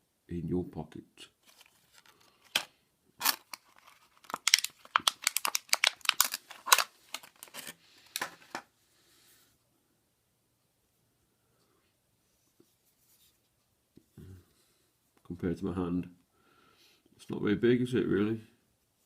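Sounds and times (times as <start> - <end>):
plastic packaging crinkling: 1.4 - 8.7.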